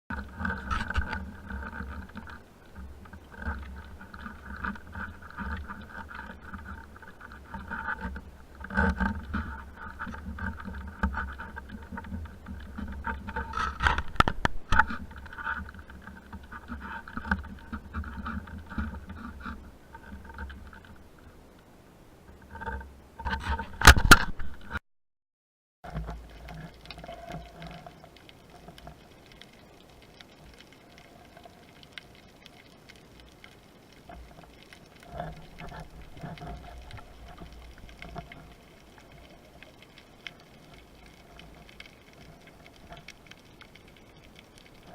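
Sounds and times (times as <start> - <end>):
underwater crackling hiss: 25.9 - 44.9.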